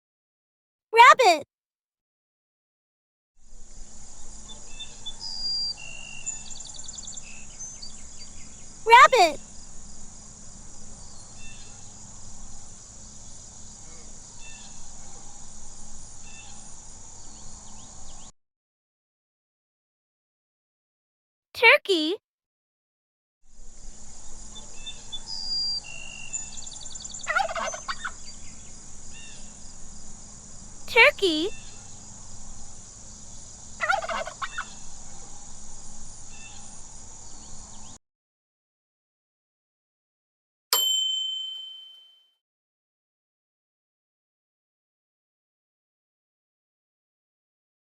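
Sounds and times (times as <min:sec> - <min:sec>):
high-pitched background hiss: 0:03.4 - 0:18.3, 0:23.5 - 0:38.0
insects droning: 0:03.4 - 0:18.3, 0:23.5 - 0:38.0
turkey gobbling: 0:27.2 - 0:28.3, 0:33.8 - 0:35.4.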